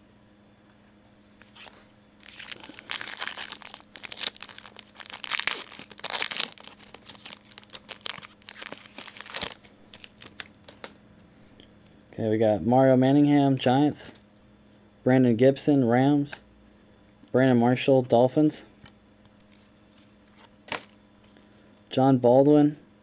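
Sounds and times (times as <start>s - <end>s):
plastic wrapper tearing and crinkling: 1.4s - 11.0s.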